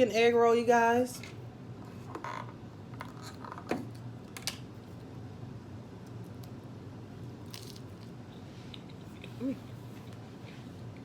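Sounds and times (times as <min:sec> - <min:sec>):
crisp crackles of fried food: 0:07.3 - 0:08.2.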